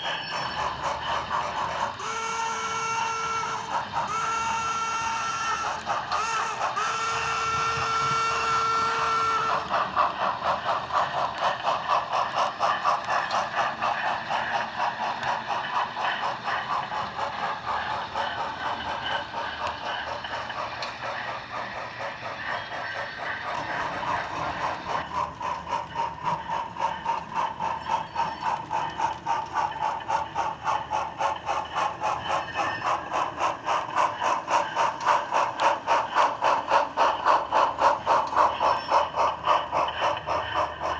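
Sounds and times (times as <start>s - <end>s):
steam exhaust chuffs: 0.0s - 40.9s
two-tone train whistle: 1.5s - 10.0s.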